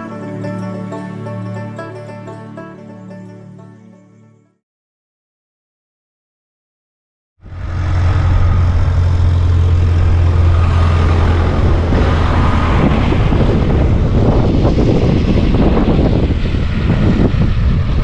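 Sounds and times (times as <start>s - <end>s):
loud rushing noise: 7.4s - 18.0s.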